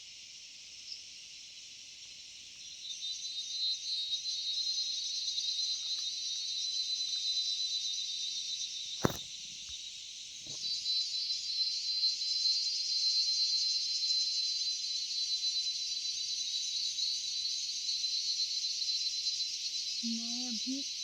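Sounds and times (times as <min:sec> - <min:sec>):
crickets and insects chirping: 0:00.0 - 0:21.0
sharp click: 0:09.0 - 0:09.2.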